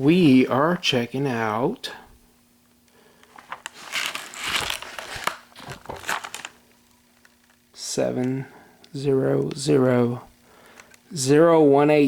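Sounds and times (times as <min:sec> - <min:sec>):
packaging crinkling and rustling: 0:03.2 - 0:07.8.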